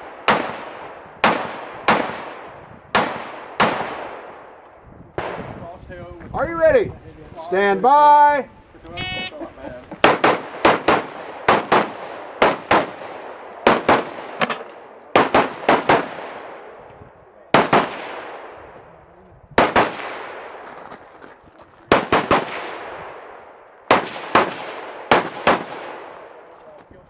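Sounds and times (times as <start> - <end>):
rapid gunshots with echo: 0.0 - 4.4, 10.0 - 16.7, 17.5 - 18.7, 19.6 - 20.6, 21.9 - 23.3, 23.9 - 26.3.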